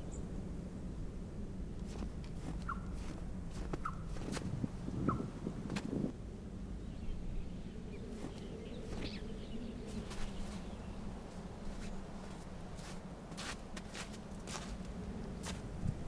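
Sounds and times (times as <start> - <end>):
low outdoor rumble: 0.0 - 16.0.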